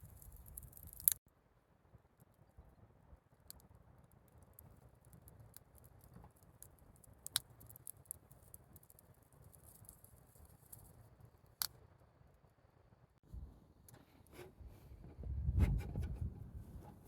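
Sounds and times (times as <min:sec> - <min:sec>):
campfire crackling: 0:00.0 - 0:01.2.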